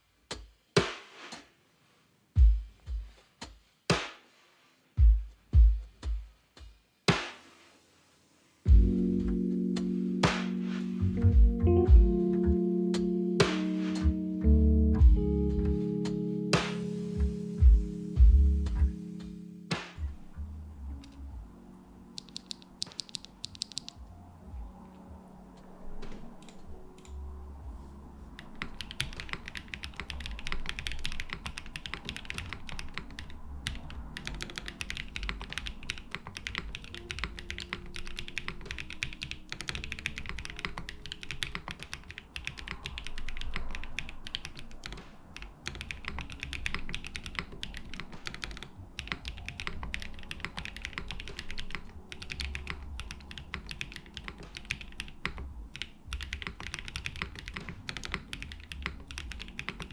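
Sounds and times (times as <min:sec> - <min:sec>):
quiet background music: 0:00.0 - 0:59.9
mechanical keyboard typing: 0:22.1 - 0:24.0, 0:28.4 - 0:59.9.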